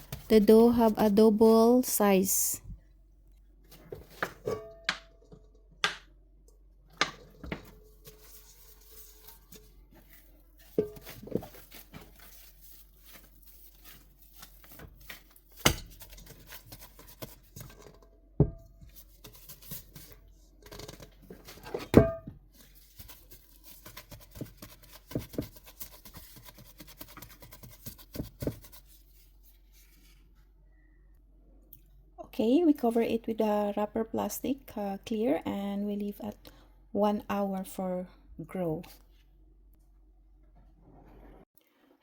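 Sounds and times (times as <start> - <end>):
plastic cling wrap crinkling: 8.0 - 17.6
bowl and wrap roll knocking: 10.6 - 12.4, 21.8 - 22.5, 23.9 - 28.7.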